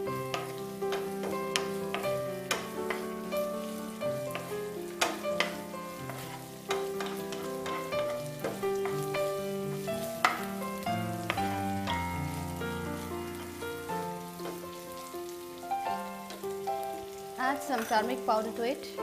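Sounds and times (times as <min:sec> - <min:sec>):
background music: 0:00.0 - 0:19.0
onions sizzling in hot oil: 0:00.0 - 0:19.0
spatula scraping pan: 0:00.2 - 0:10.5.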